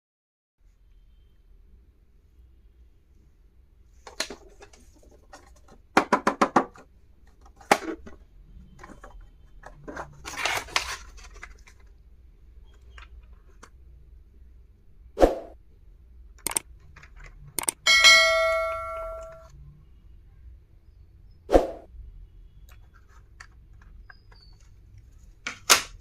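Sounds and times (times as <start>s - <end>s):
packaging rustling scrape: 8.8s - 11.9s
plastic clicks and taps: 16.4s - 17.8s.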